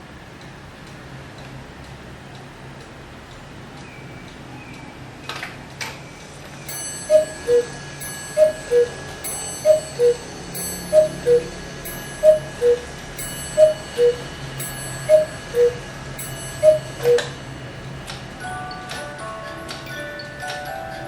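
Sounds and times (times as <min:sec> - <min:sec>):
cuckoo clock calls: 0:06.7 - 0:18.0
clock ticking: 0:06.7 - 0:19.0
clock strike ringing: 0:06.7 - 0:21.0
music box tune: 0:06.7 - 0:21.0.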